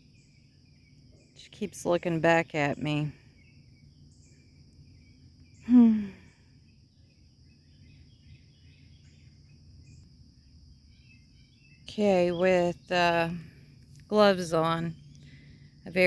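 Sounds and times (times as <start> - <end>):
crickets droning: 0.0 - 16.0
faint bird chirps: 2.8 - 16.0
person sighing: 5.6 - 6.4.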